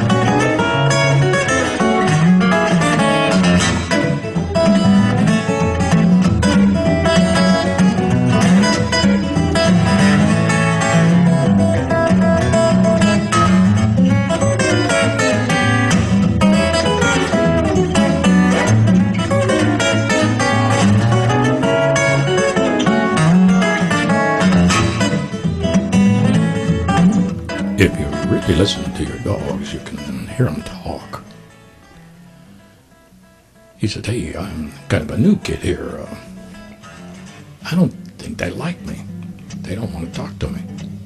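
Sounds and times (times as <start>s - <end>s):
acoustic guitar music: 0.0s - 41.0s
bass line: 27.5s - 31.2s.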